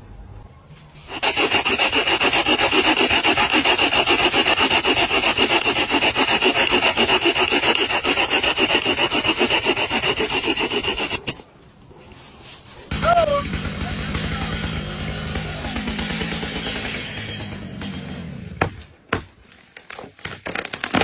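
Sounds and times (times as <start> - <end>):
saw cutting through wood: 1.1 - 11.4, 12.9 - 18.8.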